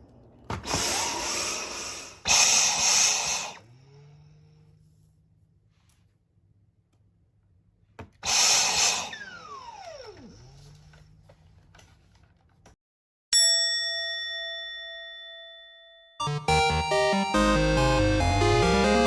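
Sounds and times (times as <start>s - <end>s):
bell-like ding: 13.4s - 16.3s.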